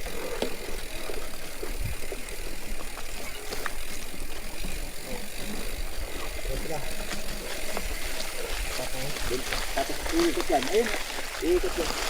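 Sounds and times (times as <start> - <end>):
bike clicks and rattles: 0.0 - 12.0
mountain bike rolling rumble: 0.0 - 12.0.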